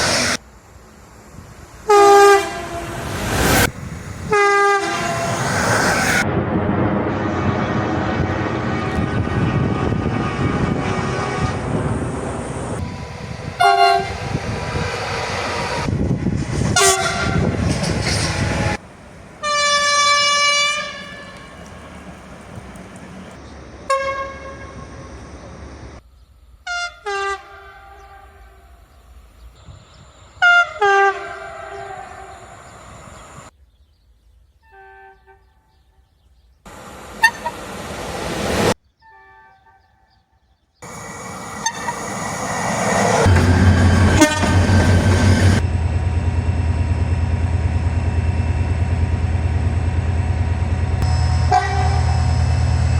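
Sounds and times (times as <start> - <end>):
train passing: 0.0 - 26.6, 27.5 - 33.5, 36.7 - 38.8, 40.8 - 52.9
train horn blasts: 1.9 - 3.2, 4.2 - 5.6, 7.1 - 15.9, 16.6 - 24.9, 26.6 - 28.8, 30.4 - 32.6, 34.6 - 35.9, 37.2 - 37.6, 41.6 - 42.1, 42.8 - 45.7, 51.0 - 52.9.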